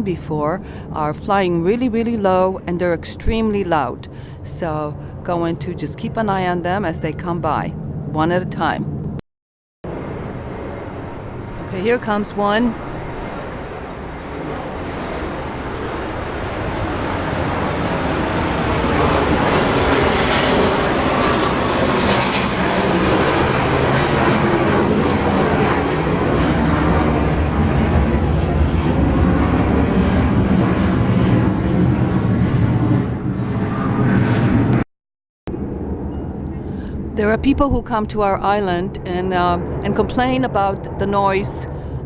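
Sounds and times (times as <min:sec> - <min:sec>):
military jet passing over: 0:09.9 - 0:34.8.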